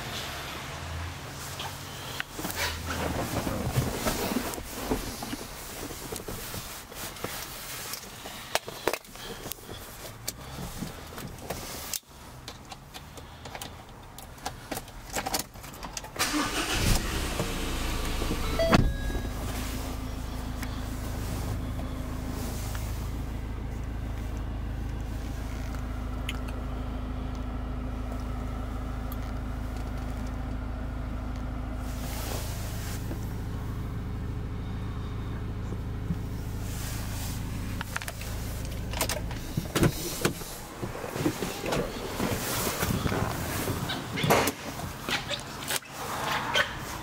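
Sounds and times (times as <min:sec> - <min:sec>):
pickup engine idling: 0:16.2 - 0:45.8.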